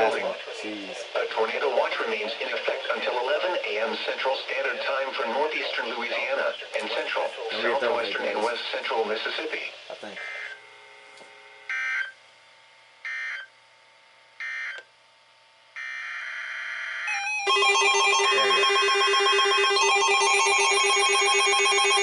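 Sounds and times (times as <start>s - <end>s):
warbling alert alarm: 15.8s - 22.0s
steady alert tone: 17.1s - 22.0s.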